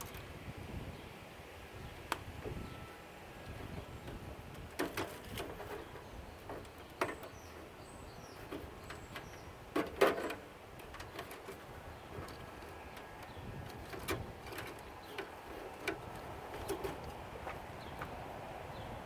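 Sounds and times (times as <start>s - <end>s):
clicks and knocks of tools and parts: 4.5s - 7.4s, 8.4s - 18.2s.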